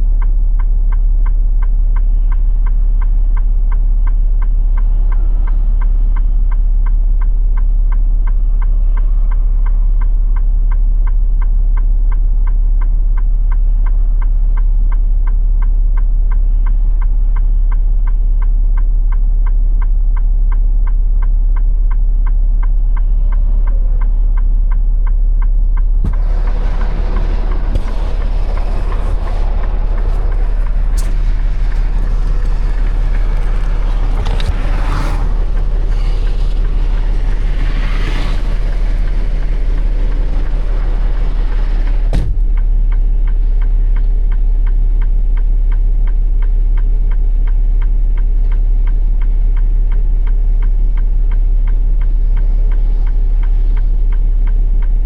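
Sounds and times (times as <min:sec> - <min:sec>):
rushing vehicle noise: 0:00.0 - 0:55.0
steady low hum: 0:00.0 - 0:55.0
hazard light flasher ticking: 0:24.1 - 0:55.0
knock: 0:42.1 - 0:42.6.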